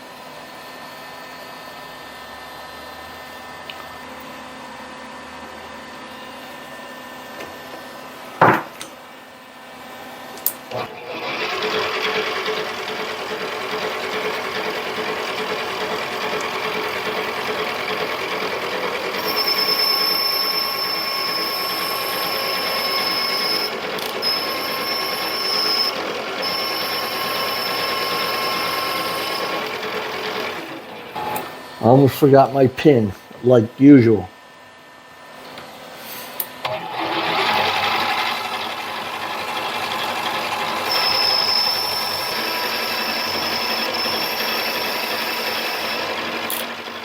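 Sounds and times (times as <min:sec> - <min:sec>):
lathe running: 0:10.7 - 0:32.6, 0:36.6 - 0:47.0.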